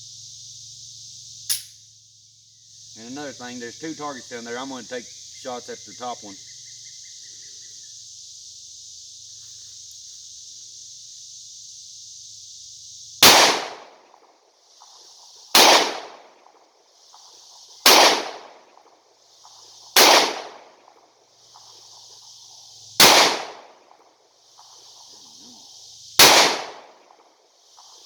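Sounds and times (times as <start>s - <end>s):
crickets chirring: 0.0s - 28.0s
pistol shots: 13.2s - 13.9s, 15.6s - 16.2s, 17.9s - 18.5s, 20.0s - 20.7s, 23.0s - 23.7s, 26.2s - 26.9s.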